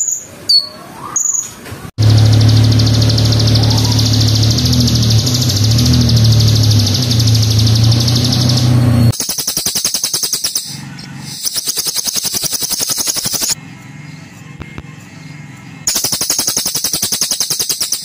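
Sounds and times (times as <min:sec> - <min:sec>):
high buzzing bird trill: 0:00.0 - 0:18.0
harsh rapid clicking rattle: 0:02.0 - 0:13.6, 0:15.9 - 0:18.0.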